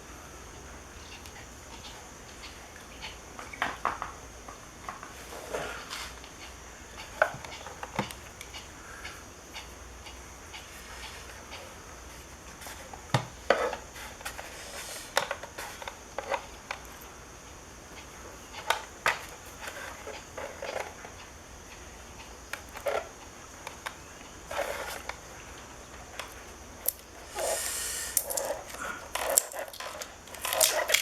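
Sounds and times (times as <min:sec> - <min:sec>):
plastic parts clicking and scraping: 0:28.2 - 0:31.0.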